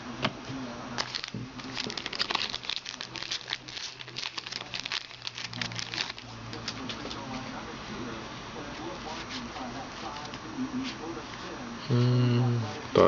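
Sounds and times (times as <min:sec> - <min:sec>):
wrapper crinkling: 0:01.0 - 0:07.2.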